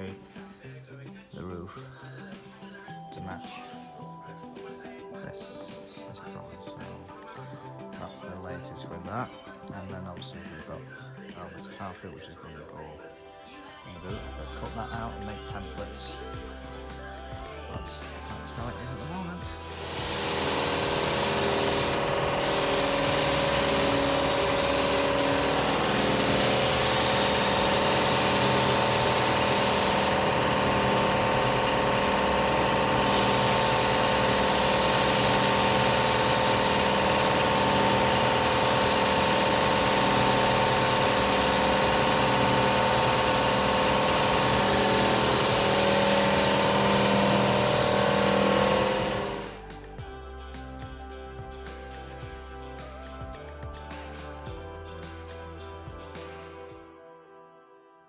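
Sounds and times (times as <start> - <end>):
motor hum: 18.7 - 49.8
paint spray gun hissing: 19.0 - 50.0.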